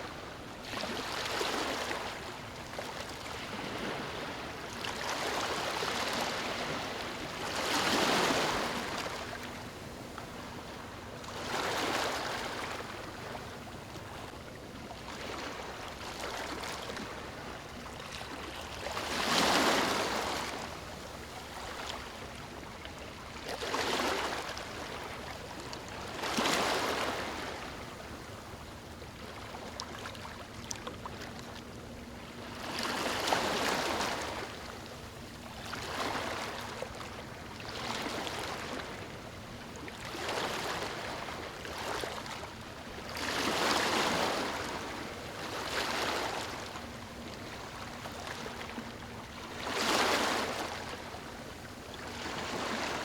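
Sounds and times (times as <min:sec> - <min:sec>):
small waves washing in: 0:00.0 - 0:14.3.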